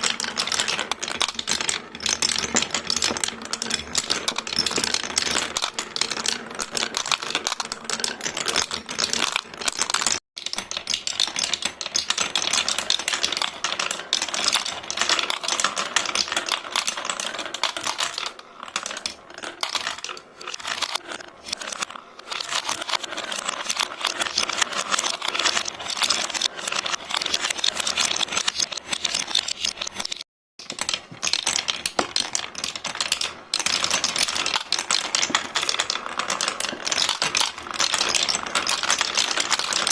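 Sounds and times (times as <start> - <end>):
marbles clattering through marble run: 0.0 - 39.9.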